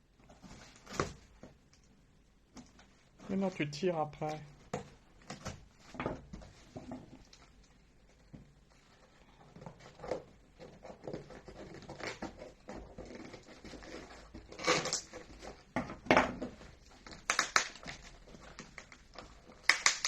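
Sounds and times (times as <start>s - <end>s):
gift packaging crinkling: 16.9s - 20.0s.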